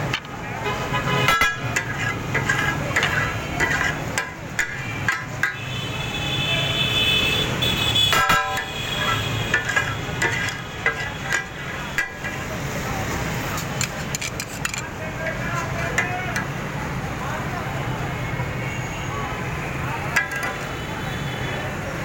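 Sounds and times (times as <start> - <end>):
street traffic: 0.0 - 22.0
vehicle horns honking: 0.5 - 1.8, 4.6 - 12.2.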